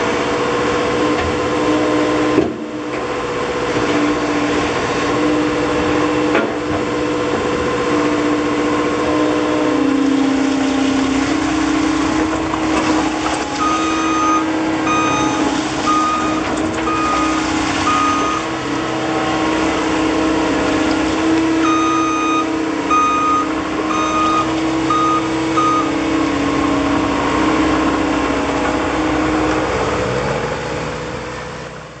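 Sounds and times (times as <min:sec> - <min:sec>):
diesel engine running: 0:00.0 - 0:32.0
reversing alarm beeping: 0:13.6 - 0:18.6, 0:21.6 - 0:26.0.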